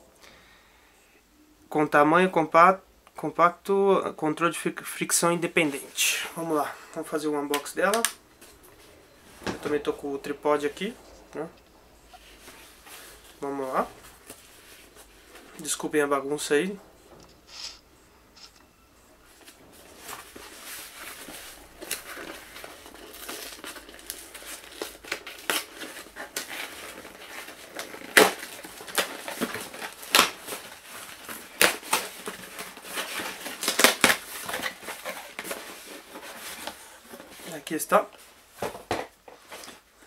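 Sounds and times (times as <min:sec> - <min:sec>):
packaging rustling and crinkling: 0:12.0 - 0:16.5, 0:19.2 - 0:40.0.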